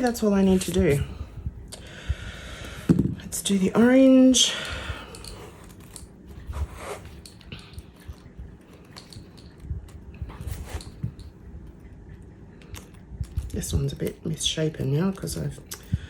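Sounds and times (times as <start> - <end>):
small clicks and rustles of hands: 4.6 - 14.2.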